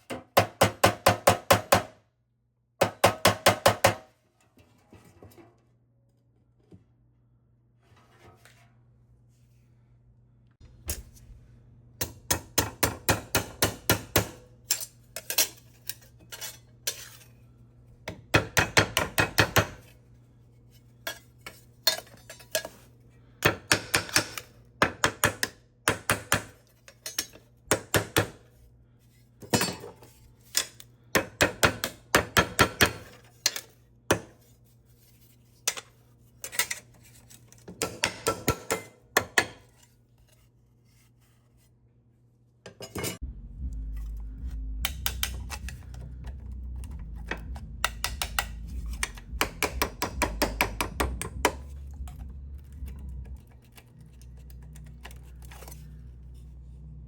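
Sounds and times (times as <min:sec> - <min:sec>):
metal-on-metal tapping and clinking: 0:44.8 - 0:53.5.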